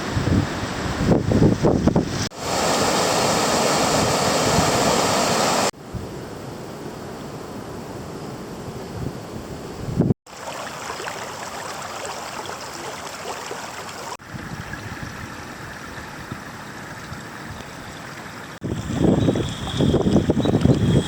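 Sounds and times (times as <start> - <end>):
creek water running: 1.8 - 5.8, 10.3 - 21.0.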